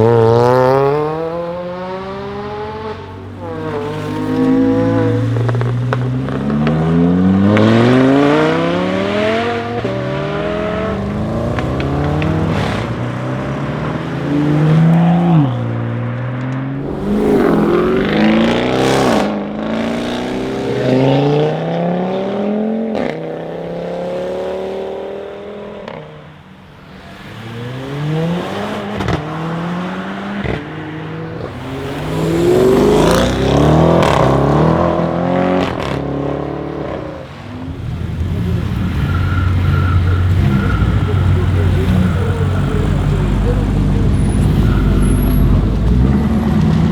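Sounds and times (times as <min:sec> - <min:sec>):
sharp exhaust cracks: 0:16.8 - 0:21.6
car engine accelerating hard: 0:16.8 - 0:26.0, 0:27.3 - 0:46.9.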